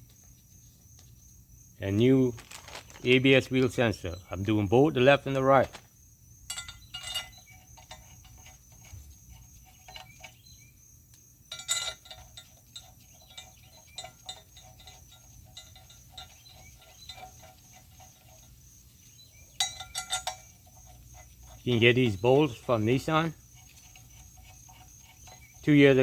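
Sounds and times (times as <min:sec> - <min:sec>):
metal parts clinking: 0:06.5 - 0:10.4, 0:11.5 - 0:18.3, 0:19.6 - 0:20.6.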